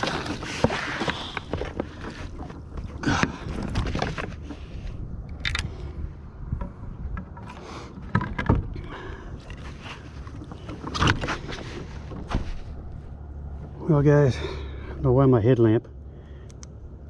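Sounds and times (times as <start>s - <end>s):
fishing gear knocks and scrapes: 0.0s - 5.7s, 9.4s - 12.9s.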